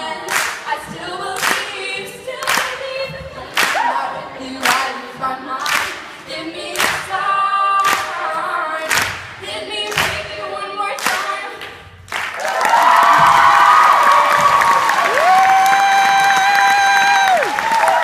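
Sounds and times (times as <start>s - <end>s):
vocal group singing in harmony: 0.0s - 11.8s.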